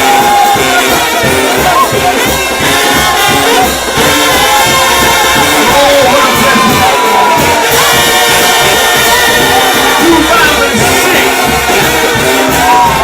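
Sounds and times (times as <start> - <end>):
congregation singing and shouting: 0.0 - 13.0
trombone band playing gospel: 0.0 - 13.0.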